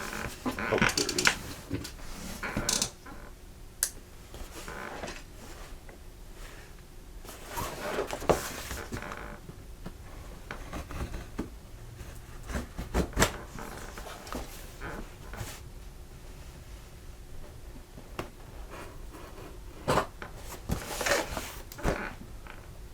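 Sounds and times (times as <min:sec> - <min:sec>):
cardboard box scraping and rustling: 0:07.3 - 0:09.1, 0:18.6 - 0:22.2.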